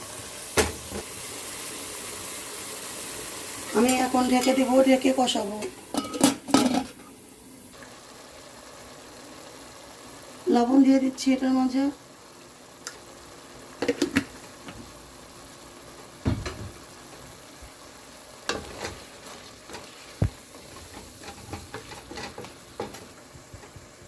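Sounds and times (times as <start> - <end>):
chicken sizzling in oil: 0.0 - 24.0
utensil scraping a pot: 18.5 - 23.0.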